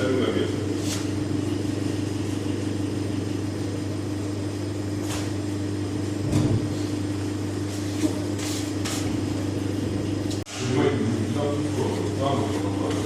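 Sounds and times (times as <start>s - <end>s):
steady machine hum: 0.0s - 13.0s.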